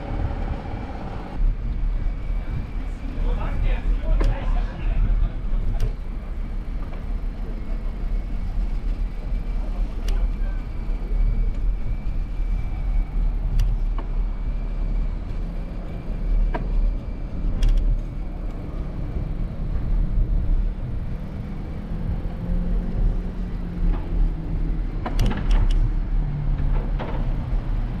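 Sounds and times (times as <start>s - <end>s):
city street traffic: 0.0s - 28.0s
passing motor vehicle hum: 0.0s - 28.0s
steady low rumble: 0.0s - 28.0s
sharp clicks or knocks: 25.0s - 25.9s.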